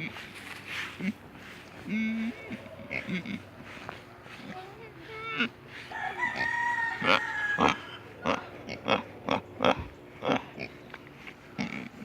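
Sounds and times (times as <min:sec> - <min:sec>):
pigs grunting: 0:01.8 - 0:03.7, 0:06.3 - 0:10.9, 0:11.5 - 0:12.0
rooster crowing: 0:05.8 - 0:08.4.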